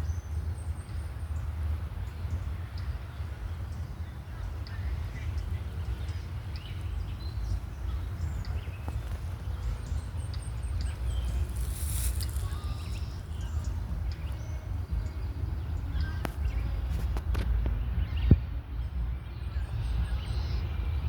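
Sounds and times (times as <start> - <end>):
wind rumble on microphone: 0.0 - 21.0
brief rustle: 11.4 - 13.0.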